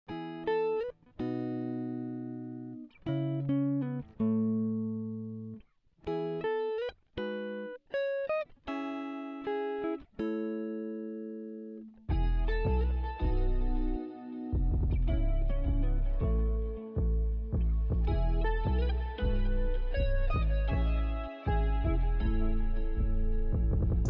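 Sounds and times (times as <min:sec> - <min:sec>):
ringing guitar chords: 0:00.1 - 0:24.0
bass and drums: 0:12.1 - 0:13.5, 0:14.6 - 0:24.0.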